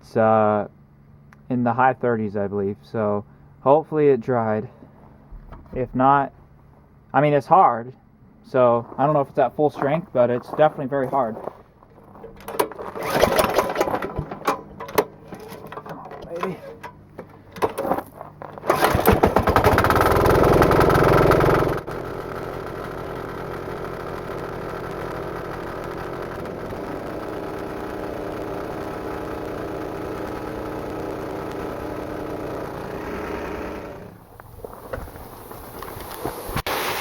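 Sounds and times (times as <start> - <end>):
diesel air compressor running: 12.0 - 36.5.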